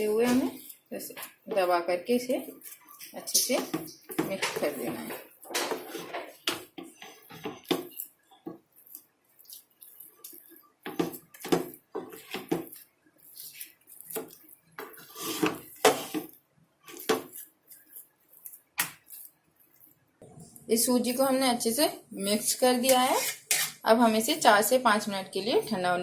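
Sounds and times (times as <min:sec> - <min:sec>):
spoon scraping a cooking pot: 0:02.4 - 0:19.4, 0:22.8 - 0:23.8.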